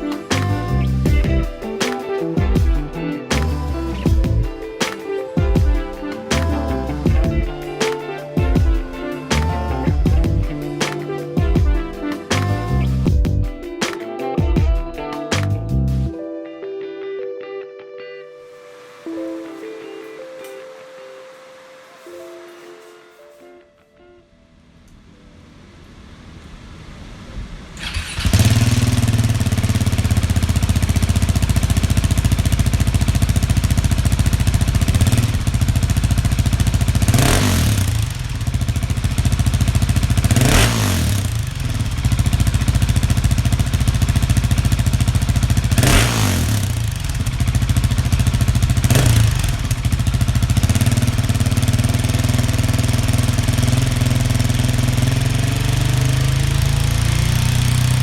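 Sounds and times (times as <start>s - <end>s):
motorcycle engine idling and revving: 0.0s - 1.8s, 2.4s - 4.7s, 5.5s - 10.8s, 11.4s - 13.6s, 27.0s - 58.0s.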